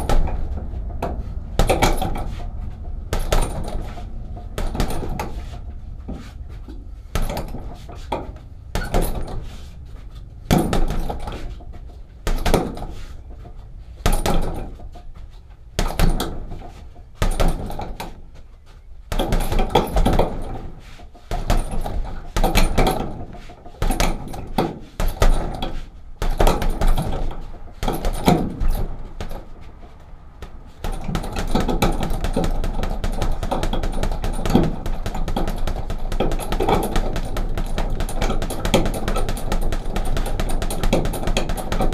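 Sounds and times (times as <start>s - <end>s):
punches on punching bag: 0.0s - 2.4s, 3.1s - 4.0s, 4.6s - 5.5s, 7.1s - 9.5s, 10.4s - 11.6s, 12.2s - 13.1s, 14.0s - 14.8s, 15.8s - 16.6s, 17.2s - 18.1s, 19.1s - 29.6s, 30.8s - 41.9s.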